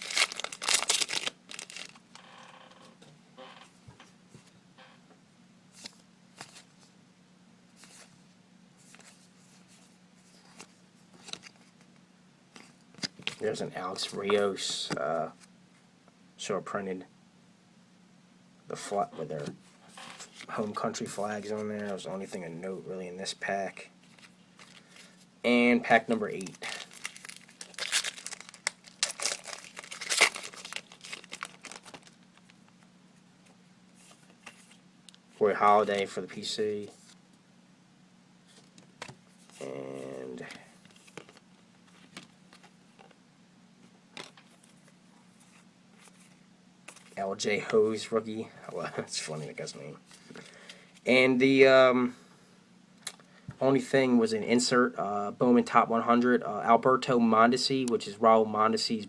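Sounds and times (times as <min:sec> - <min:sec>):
trading cards rustling and flicking: 0:00.0 - 0:02.1, 0:26.0 - 0:32.8, 0:38.5 - 0:43.1, 0:44.2 - 0:47.8
wrapper tearing and crinkling: 0:00.0 - 0:02.2, 0:26.3 - 0:32.5
low steady hum: 0:00.0 - 0:59.0.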